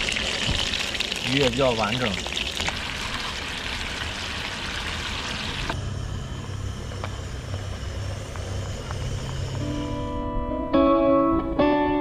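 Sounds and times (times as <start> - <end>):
fish sizzling in oil: 0.0 - 5.8
steady low hum: 0.1 - 10.9.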